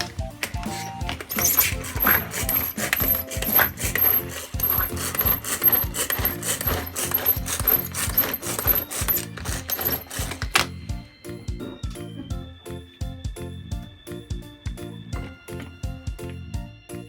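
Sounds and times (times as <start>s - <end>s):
rapid clicking and clinking: 0.0s - 10.7s
background music: 0.0s - 17.0s.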